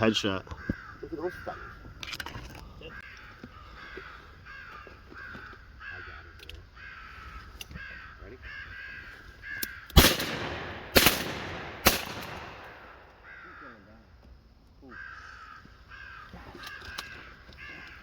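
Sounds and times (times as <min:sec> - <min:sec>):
crows cawing: 0:00.2 - 0:14.2, 0:14.8 - 0:18.0
shotgun blasts: 0:09.9 - 0:13.2.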